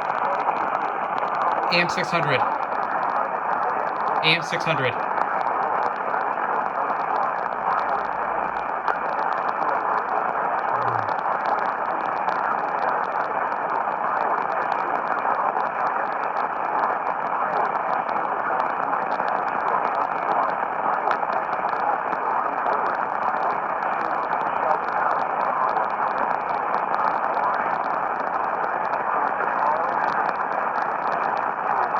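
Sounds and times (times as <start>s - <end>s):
static crackles: 0.0s - 31.9s
radio static hiss: 1.7s - 2.5s, 4.2s - 5.0s.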